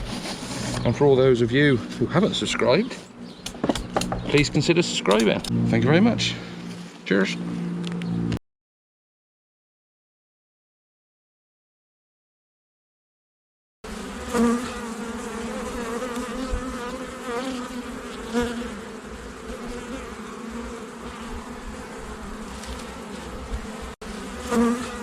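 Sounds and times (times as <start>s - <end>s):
honeybees buzzing: 13.8s - 25.0s.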